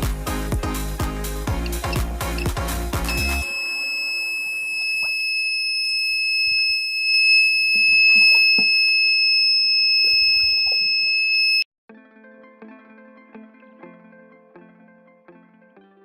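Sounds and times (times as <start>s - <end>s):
high-pitched alarm buzzer tone: 1.6s - 11.7s.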